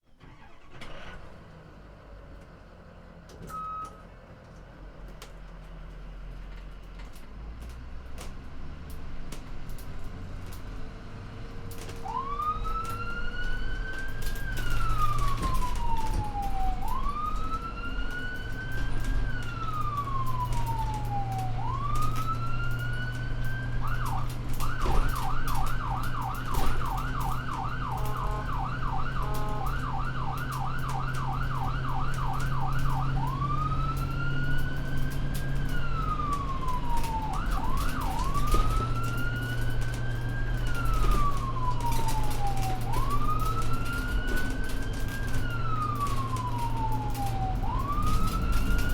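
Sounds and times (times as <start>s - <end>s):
ambulance engine running: 0.1s - 48.9s
siren wailing and yelping: 12.1s - 48.9s.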